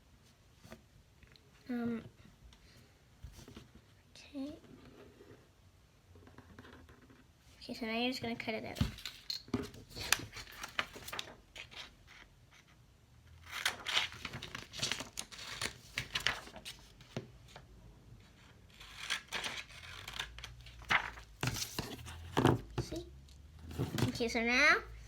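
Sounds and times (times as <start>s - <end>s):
paper rustling: 13.6s - 16.9s, 19.4s - 22.6s.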